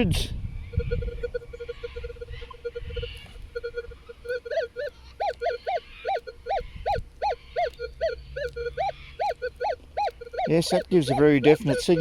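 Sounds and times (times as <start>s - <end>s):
metal detector choppy low tone: 0.0s - 12.0s
metal detector rising falling beeps: 2.6s - 12.0s.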